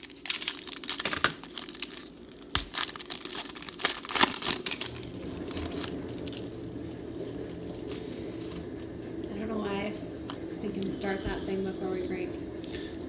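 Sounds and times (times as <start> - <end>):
foil wrappers tearing and crinkling: 0.0 - 8.6
steady low hum: 1.9 - 13.0.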